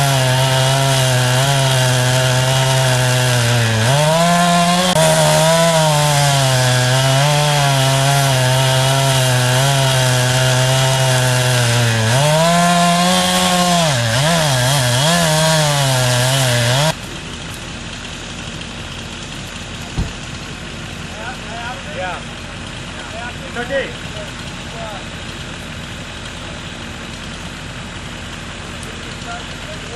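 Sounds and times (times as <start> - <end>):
chainsaw at high throttle: 0.0 - 19.8.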